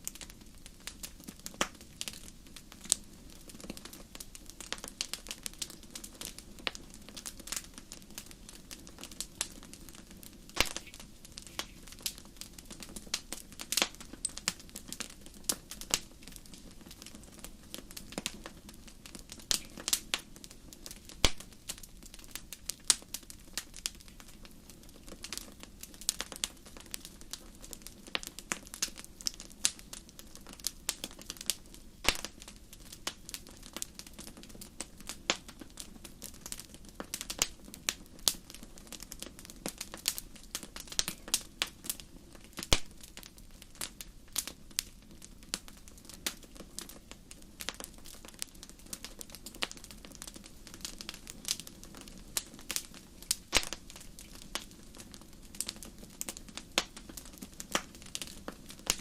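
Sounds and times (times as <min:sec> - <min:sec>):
campfire crackling: 0:00.0 - 0:59.0.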